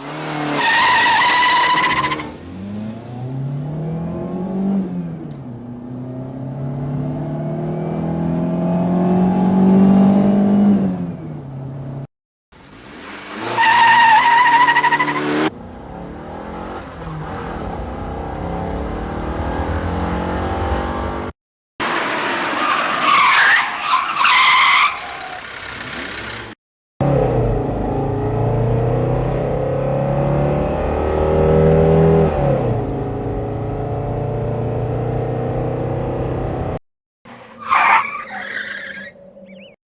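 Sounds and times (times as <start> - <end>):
car skid: 0.2 - 2.5, 12.7 - 15.5, 21.9 - 26.4, 37.3 - 39.8
tyres squealing: 37.3 - 39.8.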